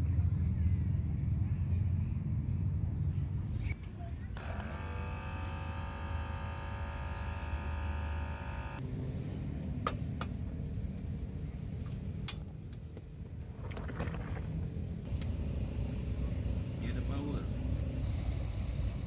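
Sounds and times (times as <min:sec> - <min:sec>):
night insects trilling: 0:00.1 - 0:19.0
sharp clicks: 0:04.4 - 0:08.8, 0:15.1 - 0:15.4.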